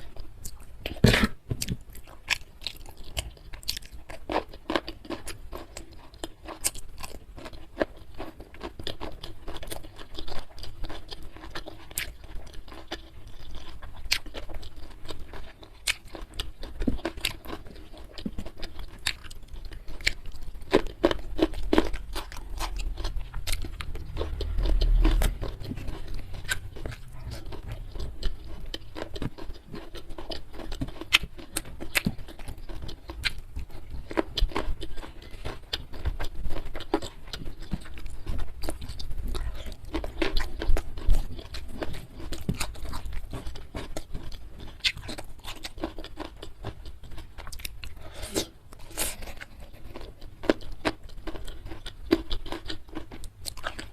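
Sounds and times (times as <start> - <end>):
chewing with wet mouth clicks: 0.0 - 53.9
low rumble: 21.9 - 28.8.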